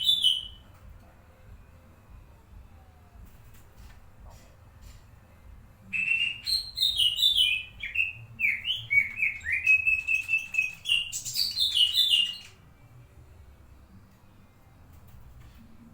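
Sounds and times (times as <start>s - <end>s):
songbird whistling song: 0.0s - 0.7s, 5.9s - 12.6s.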